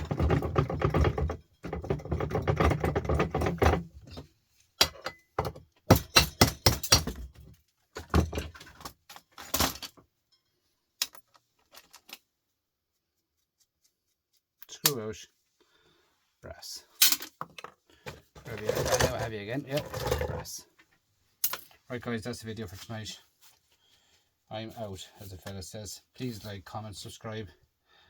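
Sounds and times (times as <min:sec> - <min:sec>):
scrap parts rattling: 0:00.0 - 0:05.2, 0:08.0 - 0:10.0, 0:17.0 - 0:20.6.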